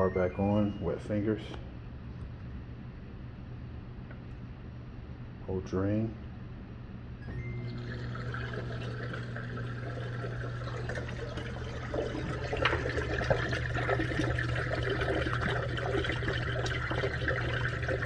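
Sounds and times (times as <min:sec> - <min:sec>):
drain pump humming: 0:07.2 - 0:18.0
water splashing and gurgling: 0:07.8 - 0:18.0.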